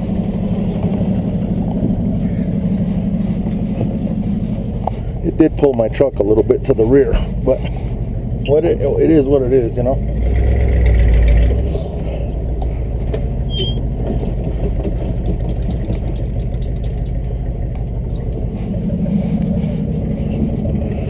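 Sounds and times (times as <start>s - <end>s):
truck engine running: 0.0s - 21.0s.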